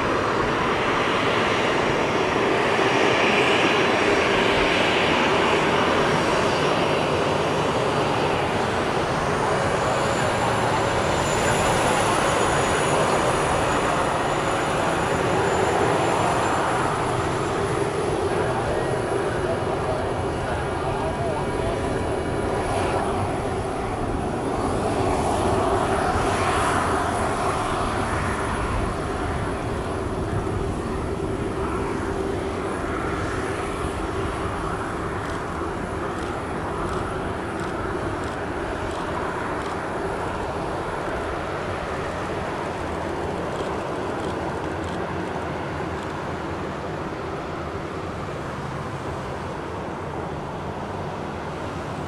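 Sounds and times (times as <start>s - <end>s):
jet engines running: 0.0s - 52.0s.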